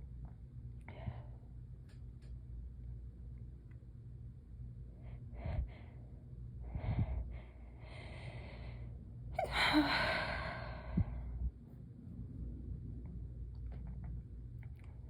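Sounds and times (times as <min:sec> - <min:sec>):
person gasping breaths: 0:05.1 - 0:06.0, 0:06.6 - 0:11.4.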